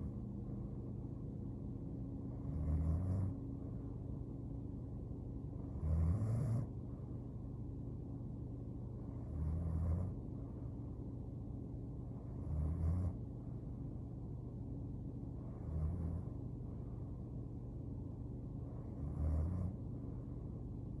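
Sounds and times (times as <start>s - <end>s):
steady low hum: 0.0s - 21.0s
woman snoring: 2.4s - 3.3s, 5.8s - 6.7s, 19.0s - 19.8s.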